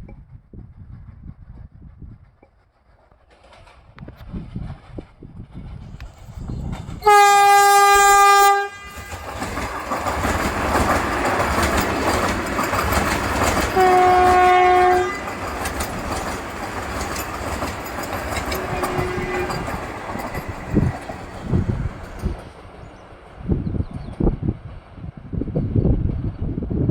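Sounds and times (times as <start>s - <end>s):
train wheels clattering: 2.1s - 23.2s
train horn blasts: 7.0s - 9.7s, 13.6s - 15.6s, 18.4s - 22.4s.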